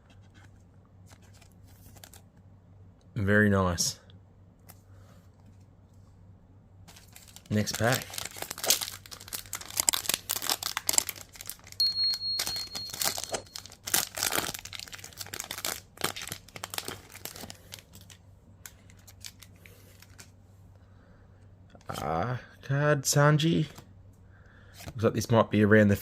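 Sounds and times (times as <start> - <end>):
cards rustling and ticking: 0.1 - 2.4, 6.9 - 20.3
foil wrapper tearing and crinkling: 6.9 - 11.8, 12.9 - 20.3.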